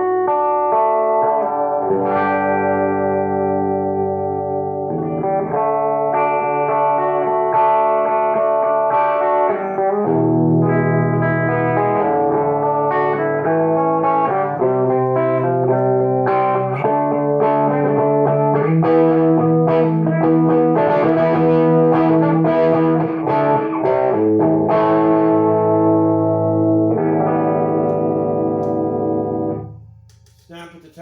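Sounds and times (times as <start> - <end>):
electric guitar chords: 0.0 - 30.1.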